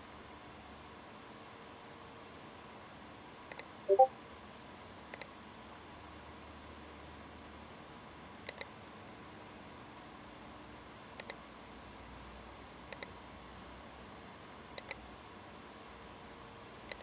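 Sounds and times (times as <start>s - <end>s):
short electronic blips: 3.9s - 4.1s.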